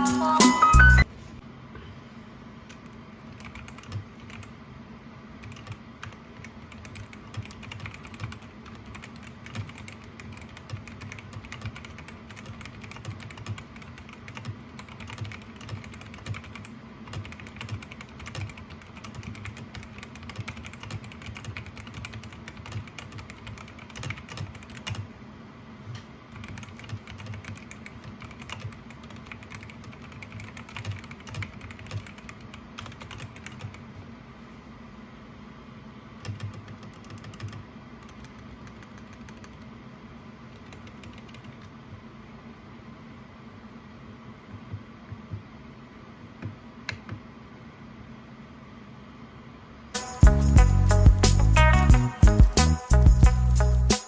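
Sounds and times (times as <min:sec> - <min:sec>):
mechanical keyboard typing: 0:02.7 - 0:04.5, 0:05.4 - 0:25.1, 0:26.3 - 0:33.9, 0:36.2 - 0:39.7, 0:40.5 - 0:41.8.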